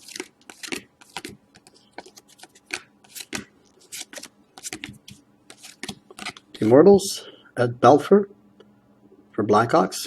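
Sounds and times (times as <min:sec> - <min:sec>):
trading cards swishing and flicking: 0:00.0 - 0:06.7.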